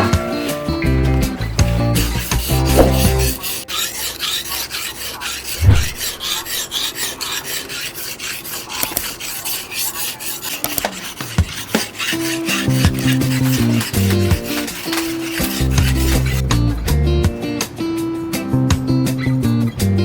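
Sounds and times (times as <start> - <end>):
file rasping on steel: 0.0 - 16.8
dull knock: 2.7 - 3.4.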